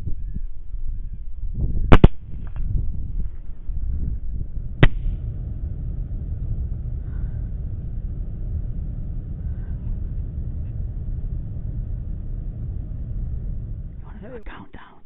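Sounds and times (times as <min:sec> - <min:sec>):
steady low rumble: 0:00.0 - 0:15.0.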